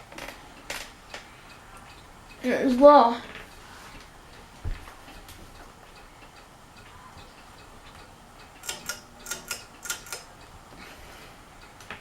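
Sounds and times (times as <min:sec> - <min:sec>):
ceiling fan ticking: 0:00.0 - 0:12.0
sharp clicks: 0:07.9 - 0:10.3.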